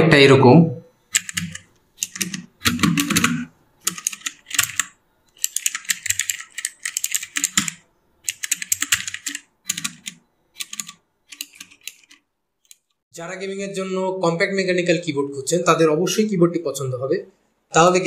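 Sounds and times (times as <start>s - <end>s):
mechanical keyboard typing: 1.1s - 12.9s.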